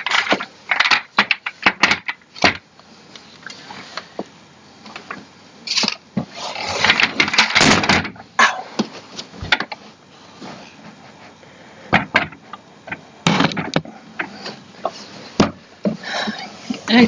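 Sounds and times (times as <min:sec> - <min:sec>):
rustling of parts being handled: 0:00.0 - 0:17.0
chair parts knocking: 0:11.9 - 0:14.3.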